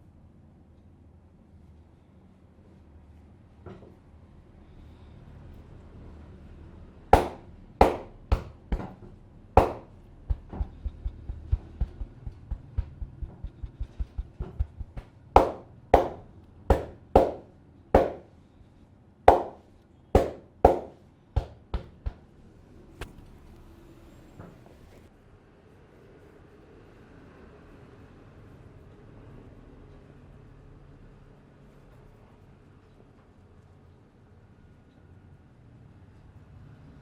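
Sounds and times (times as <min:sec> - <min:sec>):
hands slapping a head: 0:07.2 - 0:08.9, 0:09.6 - 0:17.4, 0:18.0 - 0:18.2, 0:19.3 - 0:19.6, 0:20.2 - 0:22.2
light quick hand taps: 0:09.6 - 0:17.4, 0:19.3 - 0:19.6, 0:20.2 - 0:22.2.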